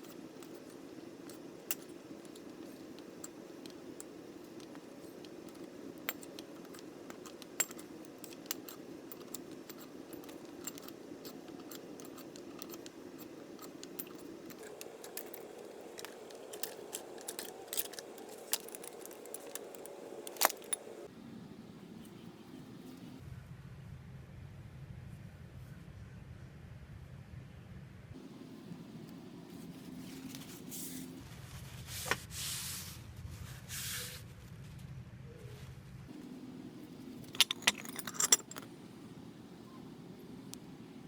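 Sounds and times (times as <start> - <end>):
metal tools clinking: 0.0 - 21.1, 36.1 - 41.0
steady low hum: 0.0 - 23.2, 36.1 - 41.0.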